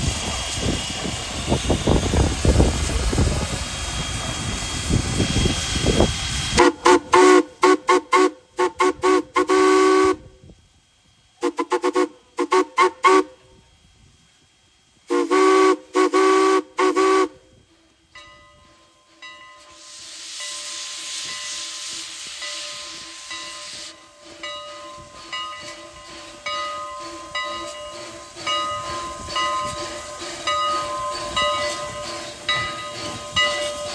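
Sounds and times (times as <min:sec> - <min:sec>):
steam locomotive hissing and rumbling: 0:00.0 - 0:33.9
steam whistle toots: 0:06.0 - 0:10.5, 0:11.4 - 0:13.6, 0:15.1 - 0:17.7.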